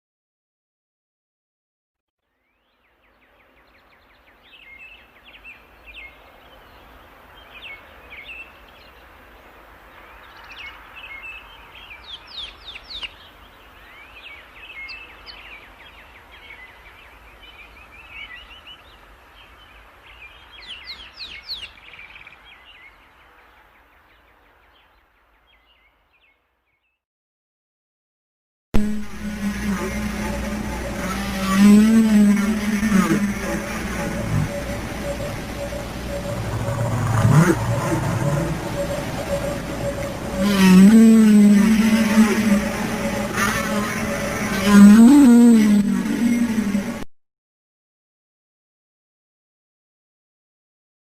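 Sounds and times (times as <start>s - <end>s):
steady background hiss: 2.9s - 25.4s, 29.0s - 45.0s
birds chirping: 28.8s - 47.0s.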